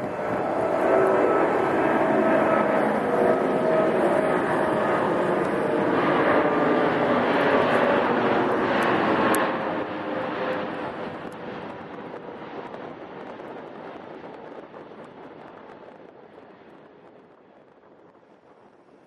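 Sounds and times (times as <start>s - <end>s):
jet engines roaring and whining: 0.0s - 19.0s.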